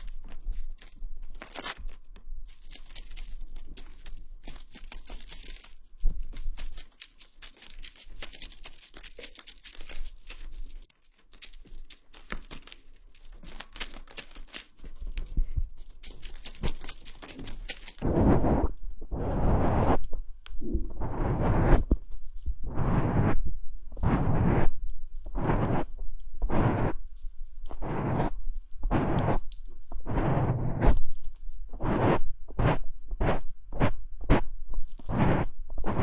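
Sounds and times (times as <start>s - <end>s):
small clicks: 0.0s - 18.0s
crackly scratching at microphone: 0.0s - 18.7s, 24.0s - 24.7s, 25.4s - 25.9s, 26.5s - 27.0s, 27.6s - 34.4s, 35.0s - 36.0s.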